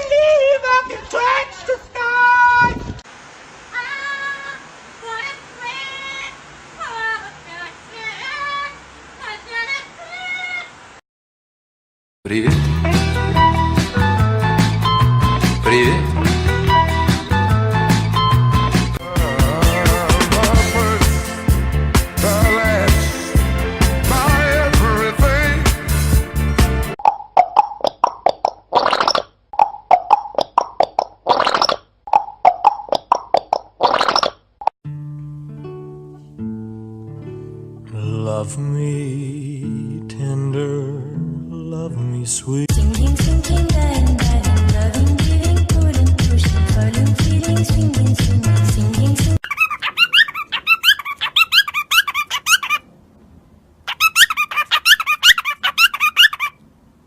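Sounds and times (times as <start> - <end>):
parrot squeaky chirps: 49.4 - 52.9, 53.9 - 56.6.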